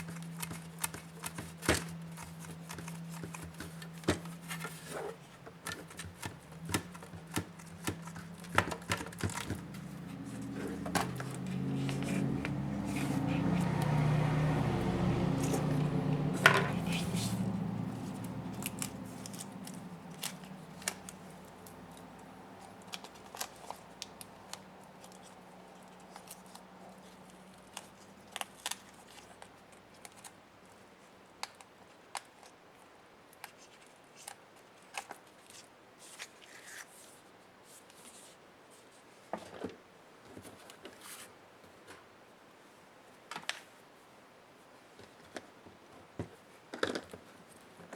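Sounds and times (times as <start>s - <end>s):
tools clicking on laptop parts: 0.0s - 13.2s, 15.4s - 25.4s
low steady hum: 7.5s - 27.2s.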